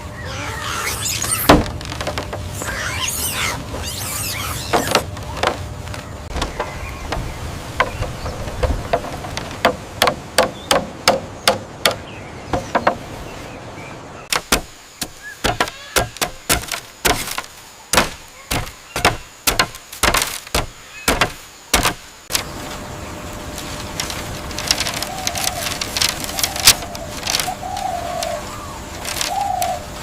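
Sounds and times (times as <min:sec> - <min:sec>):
sharp knocking blows: 0:06.3 - 0:13.0, 0:14.3 - 0:22.4.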